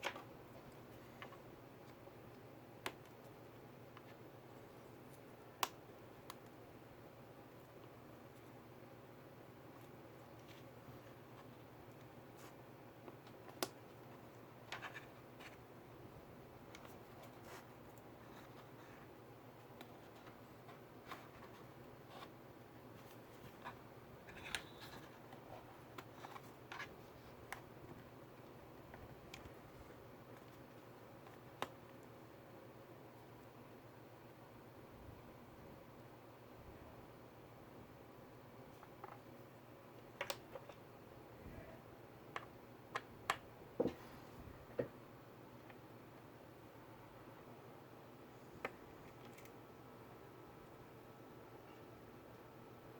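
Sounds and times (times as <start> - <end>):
faint room hiss: 0.0 - 52.9.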